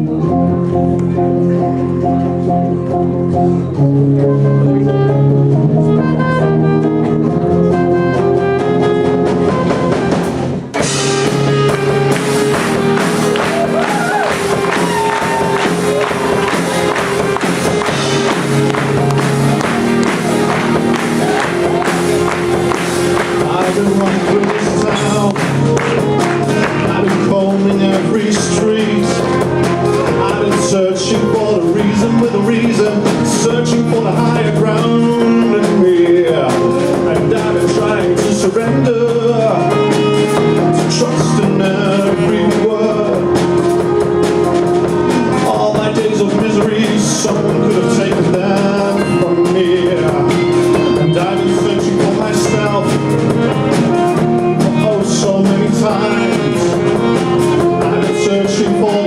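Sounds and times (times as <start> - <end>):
live band playing: 0.0 - 59.0
man singing: 13.6 - 59.0.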